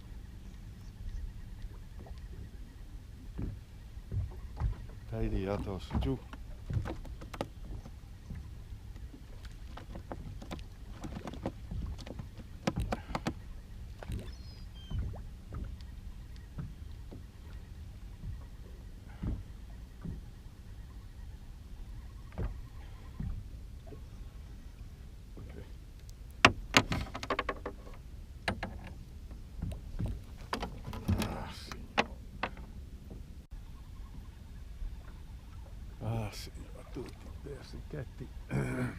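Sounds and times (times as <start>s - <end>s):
knocks and clatter in boat: 0.4s - 24.5s, 25.3s - 34.3s
sharp knocks and clatters: 26.4s - 29.0s.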